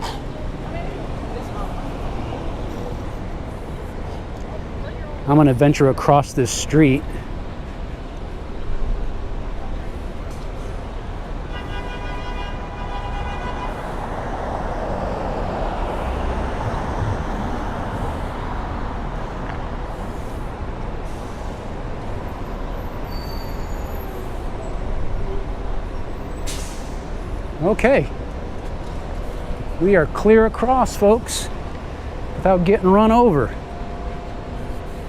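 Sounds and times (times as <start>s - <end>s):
high vehicle whine: 0.0s - 35.0s
street traffic: 0.0s - 35.0s.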